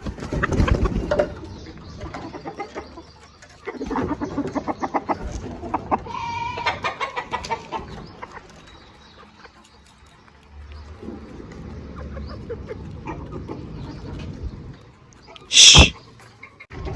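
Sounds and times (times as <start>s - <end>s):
chickens clucking: 0.0s - 16.9s
chicken drawn-out call: 3.7s - 7.9s, 15.4s - 16.0s.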